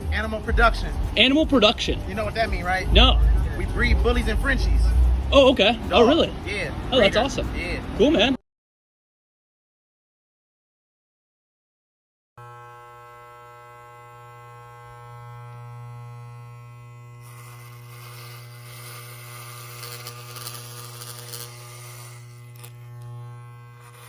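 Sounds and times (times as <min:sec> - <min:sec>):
clippers cutting hair: 0:12.4 - 0:24.0
electric hair clippers buzzing: 0:12.4 - 0:24.0.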